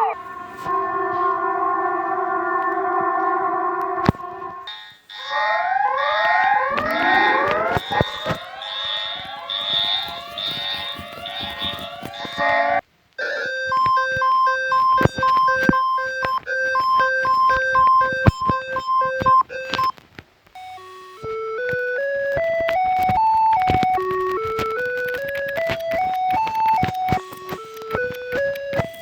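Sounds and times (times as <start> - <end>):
pulsing high tone: 0.0 - 10.3, 13.2 - 19.9
rising siren sweeps: 0.0 - 10.4
alternating low and high beeps: 13.2 - 19.9.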